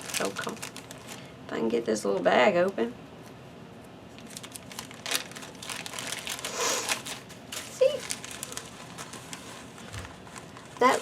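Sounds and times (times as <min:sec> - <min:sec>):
plastic bag crinkling: 0:00.0 - 0:01.3, 0:04.1 - 0:11.0.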